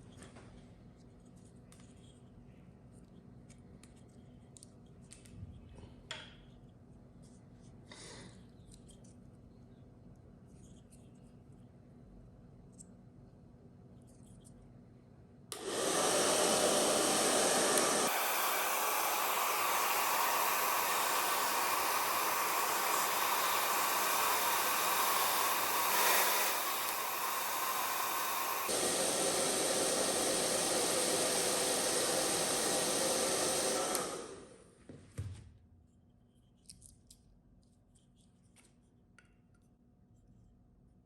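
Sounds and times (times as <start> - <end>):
electric blower running: 15.5 - 34.7.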